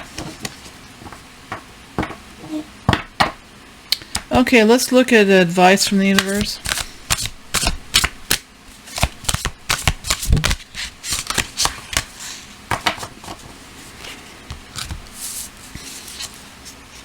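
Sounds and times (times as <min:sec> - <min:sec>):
cards being shuffled: 0:06.2 - 0:12.2, 0:12.9 - 0:17.0.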